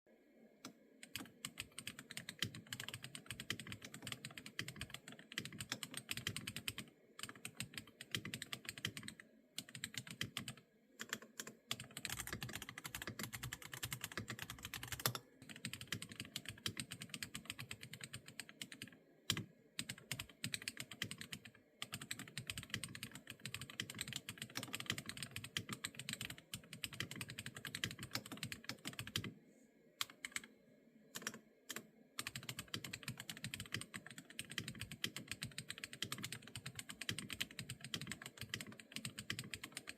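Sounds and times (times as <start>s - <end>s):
mechanical keyboard typing: 1.0s - 29.3s, 30.0s - 30.5s, 31.2s - 39.9s.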